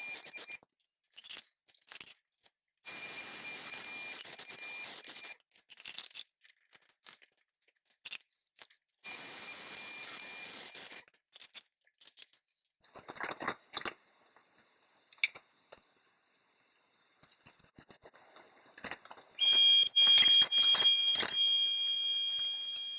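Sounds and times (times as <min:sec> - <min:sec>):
small clicks: 0:10.7 - 0:22.9
welding arc buzzing: 0:18.1 - 0:22.9.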